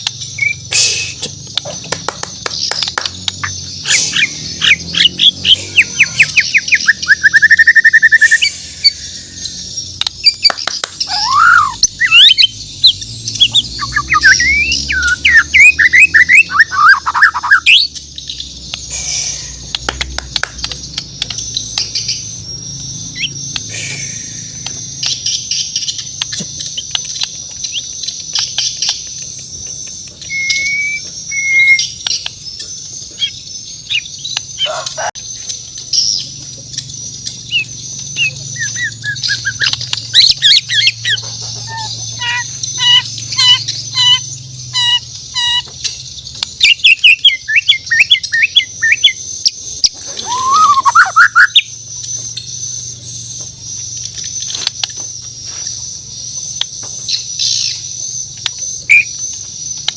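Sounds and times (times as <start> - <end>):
high-pitched bird chatter: 0.0 - 59.9
bird singing whistled phrases: 0.4 - 1.3, 3.8 - 12.6, 13.4 - 17.9, 30.2 - 32.1, 37.5 - 40.9, 49.9 - 51.7.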